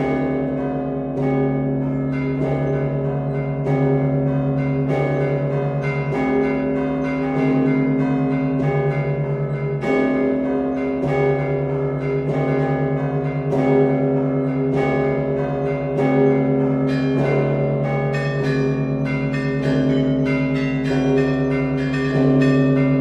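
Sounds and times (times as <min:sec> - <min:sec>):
deep church bell struck: 0:00.0 - 0:23.0.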